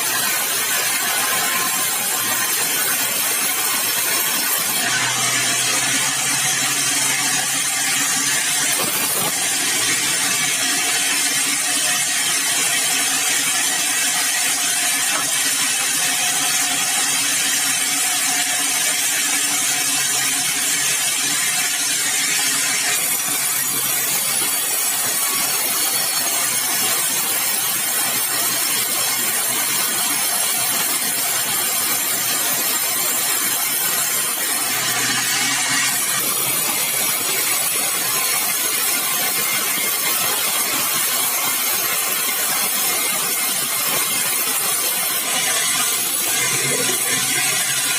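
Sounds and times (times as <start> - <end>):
sawmill saw cutting log: 0.0 - 47.9.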